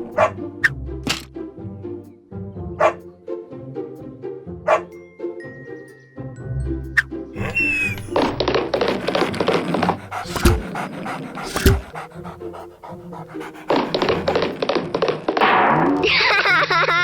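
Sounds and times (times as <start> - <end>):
cartoon puppy panting: 1.1 - 1.3, 7.4 - 14.7
sharp thumps: 7.4 - 14.4.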